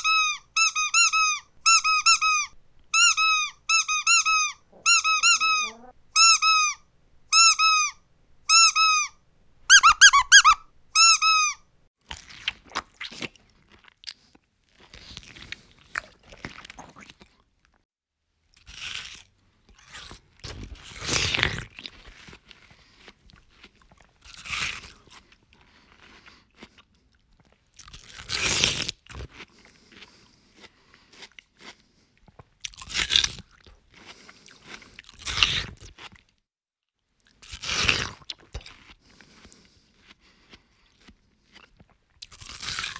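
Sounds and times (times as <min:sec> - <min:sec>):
squeaky toy squeezed: 0:00.0 - 0:11.6
crunchy food being chewed: 0:12.0 - 0:17.8, 0:18.4 - 0:36.4, 0:37.1 - 0:42.9.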